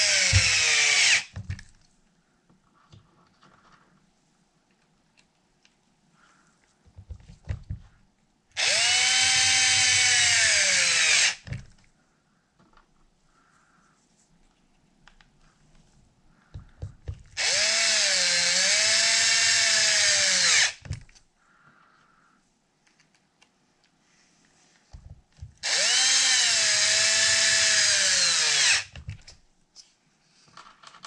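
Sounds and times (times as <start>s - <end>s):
power drill driving bolts: 0.0s - 1.6s, 8.6s - 11.7s, 17.4s - 21.0s, 25.6s - 29.2s.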